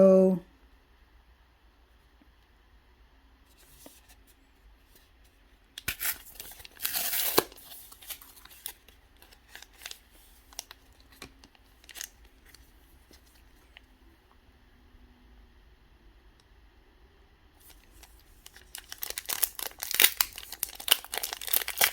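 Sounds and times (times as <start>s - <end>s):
foil wrapper tearing: 5.8s - 12.7s, 17.7s - 21.9s
wrapper crinkling: 5.8s - 13.7s, 17.6s - 21.9s.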